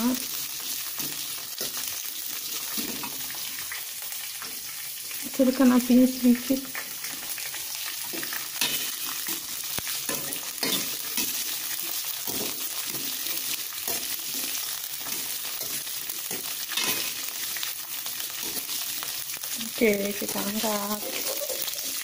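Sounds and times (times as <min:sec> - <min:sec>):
beans sizzling in a frying pan: 0:00.0 - 0:22.0
spatula scraping a pan: 0:00.8 - 0:03.5, 0:06.8 - 0:19.0.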